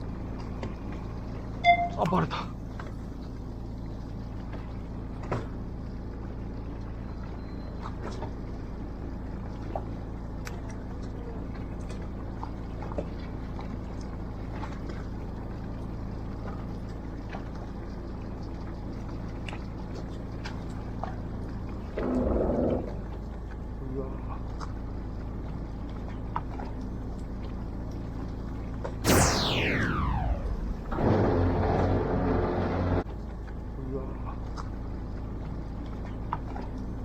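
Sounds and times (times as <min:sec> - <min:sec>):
boat engine humming: 0:00.0 - 0:28.9, 0:31.0 - 0:37.0.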